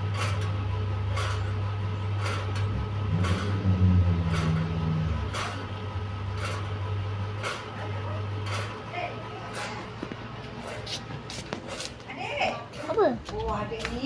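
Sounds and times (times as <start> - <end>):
deeper hum: 0.0 - 9.4
fan clicking: 0.0 - 14.0
fan humming: 0.0 - 14.0.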